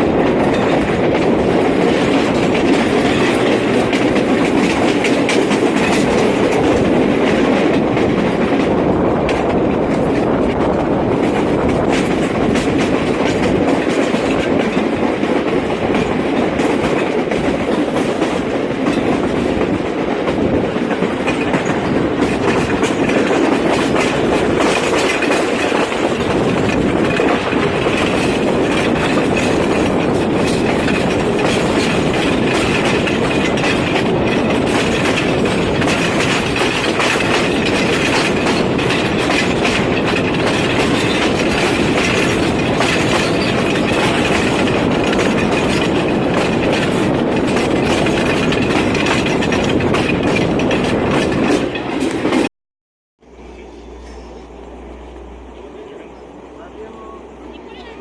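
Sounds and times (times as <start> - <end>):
train rumbling: 0.0 - 52.5, 53.2 - 58.0
wheels clicking over rail joints: 0.0 - 52.5.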